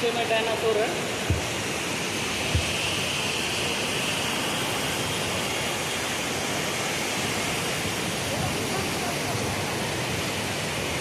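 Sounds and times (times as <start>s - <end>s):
water rushing through gates: 0.0s - 11.0s
low thump: 1.3s - 1.5s, 2.5s - 2.8s.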